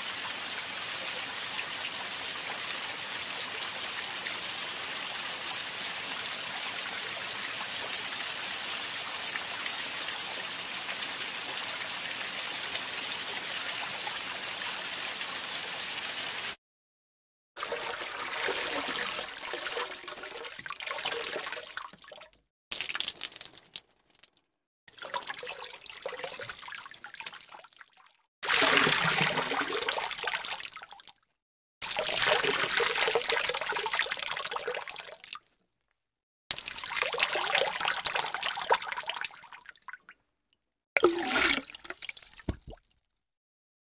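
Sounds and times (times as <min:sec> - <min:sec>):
water pouring and trickling: 0:17.6 - 0:31.2, 0:31.8 - 0:35.5, 0:36.5 - 0:40.2, 0:41.0 - 0:43.1
running water rushing: 0:41.0 - 0:42.8.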